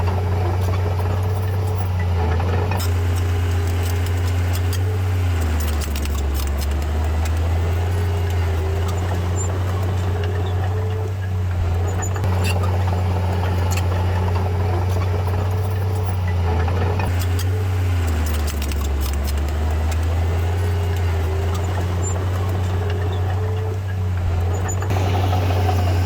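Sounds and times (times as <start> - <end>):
diesel engine running: 0.0 - 26.0
metallic clicks and rattles: 2.8 - 9.2, 17.1 - 23.7.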